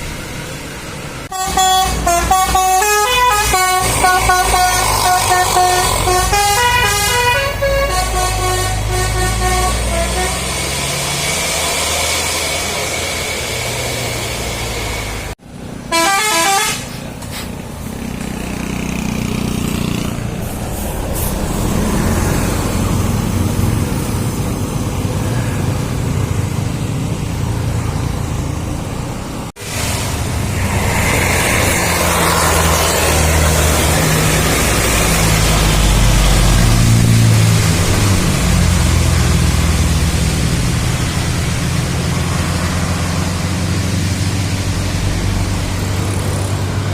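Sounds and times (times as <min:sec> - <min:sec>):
bus engines driving past: 0:00.0 - 0:46.9
multi-tone musical bus horn: 0:01.3 - 0:11.0, 0:15.9 - 0:17.4.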